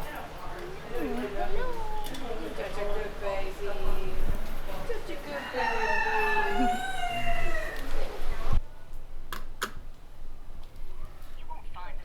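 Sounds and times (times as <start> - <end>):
rooster crowing: 5.1 - 8.6.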